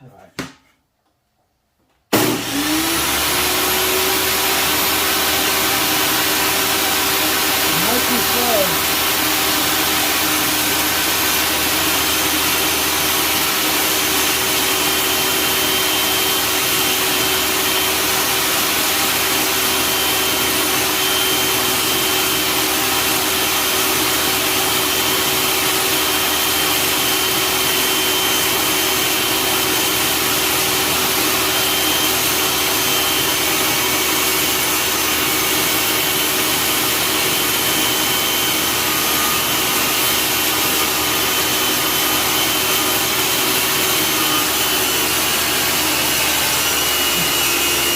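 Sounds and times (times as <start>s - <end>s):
table saw motor whine: 2.1s - 47.9s
saw rasping through plastic: 27.8s - 47.9s.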